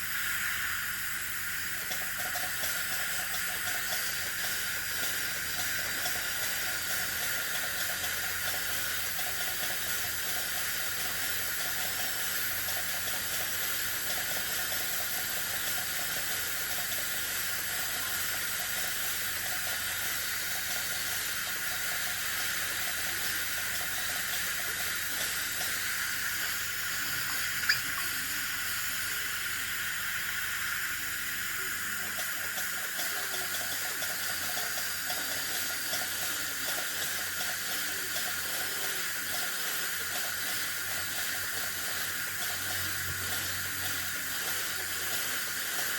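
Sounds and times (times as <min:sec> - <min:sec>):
dental equipment hissing: 0:00.0 - 0:45.9
water spraying: 0:22.8 - 0:29.6.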